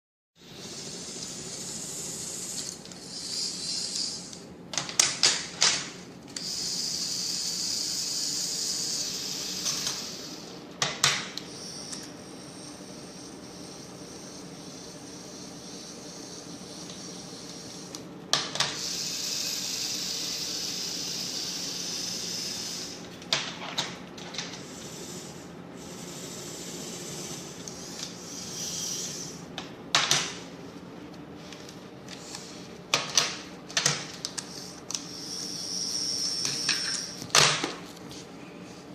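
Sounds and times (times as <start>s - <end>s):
small electric motors whirring: 0.4s - 5.4s, 6.3s - 23.0s, 24.2s - 29.5s, 31.4s - 37.5s
steady low hum: 0.4s - 38.9s
mechanism clicks and clacks: 3.8s - 6.5s.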